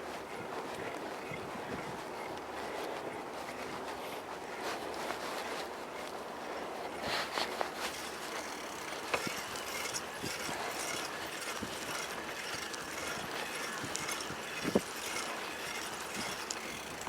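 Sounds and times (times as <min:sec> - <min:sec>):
bicycle rolling and wind noise: 0:00.0 - 0:17.0
bicycle clicks and rattles: 0:04.6 - 0:17.0.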